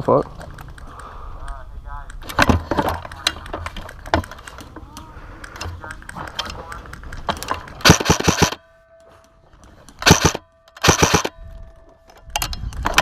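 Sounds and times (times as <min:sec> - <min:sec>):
airsoft gun bursts: 0:07.8 - 0:08.6, 0:10.0 - 0:11.3.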